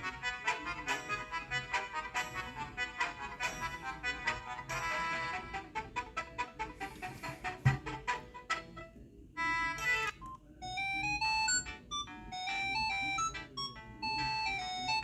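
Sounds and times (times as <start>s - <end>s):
electronic ringtone melody: 9.5s - 15.0s.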